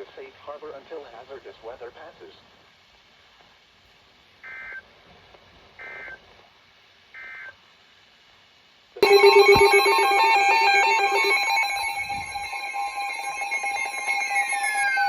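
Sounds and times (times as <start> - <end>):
loud warbling electronic alert tone: 9.0 - 15.0
warbling digital data bursts: 9.0 - 15.0.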